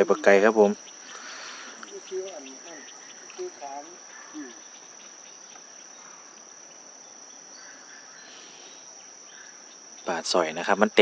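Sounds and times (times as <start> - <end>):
faint background noise: 0.0 - 11.0
insects trilling: 0.0 - 11.0.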